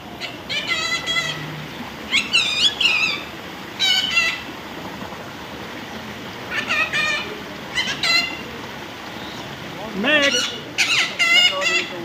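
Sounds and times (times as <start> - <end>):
parrot calling shrilly: 0.2 - 1.4, 2.1 - 3.2, 3.8 - 4.4, 6.5 - 8.4, 10.2 - 12.0.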